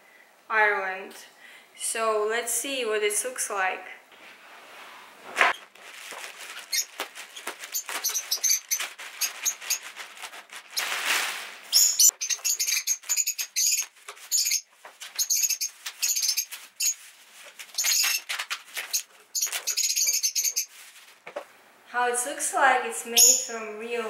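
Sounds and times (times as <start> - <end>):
packaging rustling and crinkling: 5.5 - 21.4
birds chirping: 6.6 - 9.8, 11.7 - 17.0, 17.8 - 20.7.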